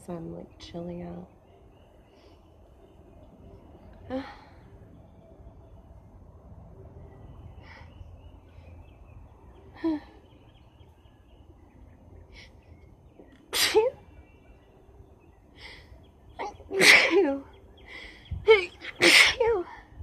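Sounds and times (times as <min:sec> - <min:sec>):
woman sneezing: 0:13.6 - 0:14.0, 0:16.8 - 0:17.2, 0:19.0 - 0:19.4.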